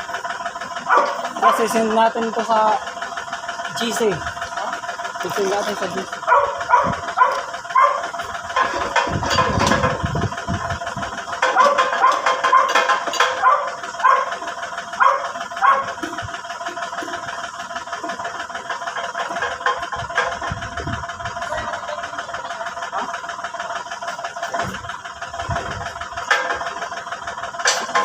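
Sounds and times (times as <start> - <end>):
backhoe engine running: 0.0 - 28.0
dog barking: 0.9 - 1.7, 6.2 - 8.1, 11.6 - 12.8, 13.4 - 14.4, 15.0 - 16.0.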